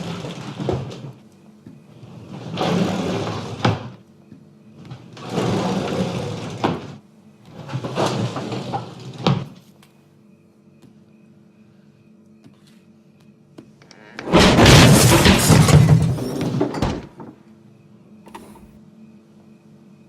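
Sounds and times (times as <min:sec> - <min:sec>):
cupboard doors sliding shut: 0:13.9 - 0:17.4, 0:18.3 - 0:18.8.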